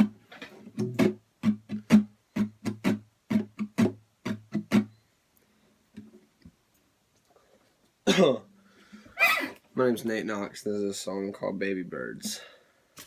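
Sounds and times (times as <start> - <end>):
acoustic guitar strumming: 0.0 - 5.0.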